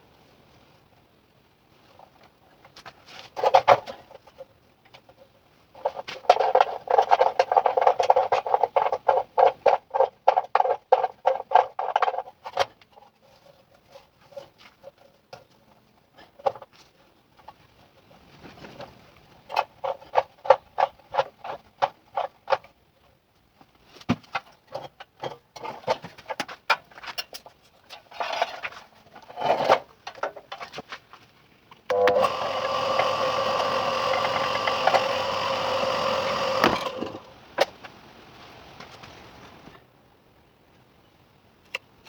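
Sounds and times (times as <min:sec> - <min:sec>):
small electric motor tool running: 0:31.9 - 0:37.3.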